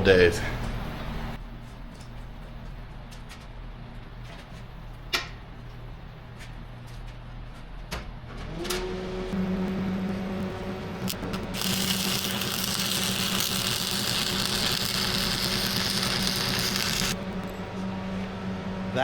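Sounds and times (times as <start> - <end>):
transformer hum: 8.6 - 19.0
welding arc crackling hiss: 11.1 - 17.2.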